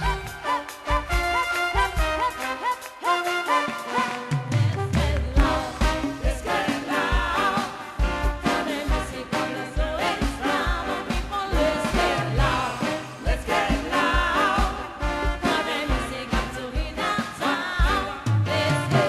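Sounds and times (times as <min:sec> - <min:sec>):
live dance band playing: 0:00.0 - 0:19.0
kick drum and bass beat: 0:05.3 - 0:17.0.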